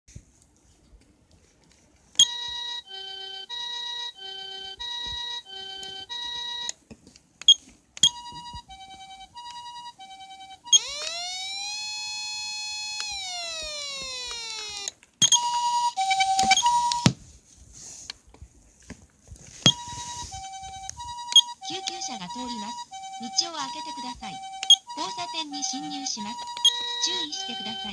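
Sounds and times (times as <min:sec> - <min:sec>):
two-tone hi-lo siren: 0:02.2 - 0:06.7, 0:08.1 - 0:17.2, 0:19.7 - 0:27.9
siren wail: 0:08.7 - 0:17.1, 0:19.8 - 0:27.9
sharp clicks: 0:10.8 - 0:11.3.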